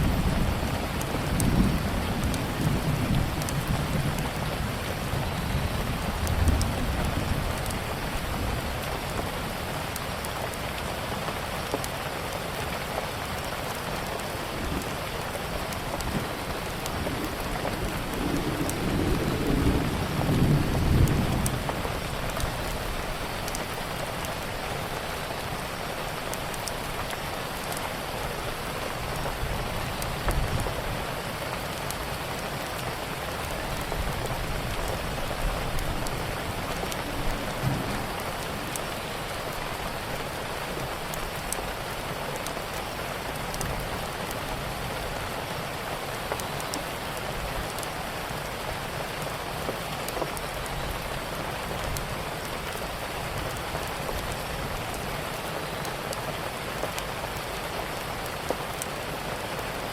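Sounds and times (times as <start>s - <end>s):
low rumble of thunder: 0.0s - 9.4s, 14.5s - 23.3s, 33.7s - 41.8s
steady rain falling: 0.0s - 59.9s.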